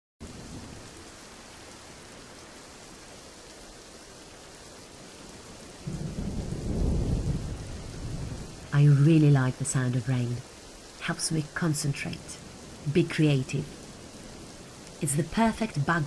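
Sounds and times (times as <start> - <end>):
steady rain falling: 0.2 - 16.0
low rumble of thunder: 5.8 - 9.2.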